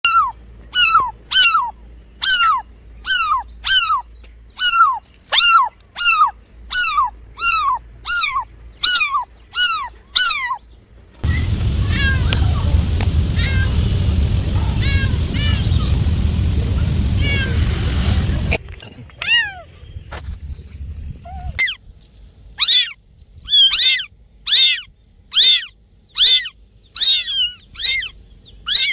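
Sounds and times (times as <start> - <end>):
cat high-pitched calls: 0.0 - 10.6, 11.9 - 12.6, 13.4 - 13.7, 14.6 - 15.6, 17.2 - 17.6, 19.2 - 19.7, 21.4 - 21.8, 22.6 - 28.9.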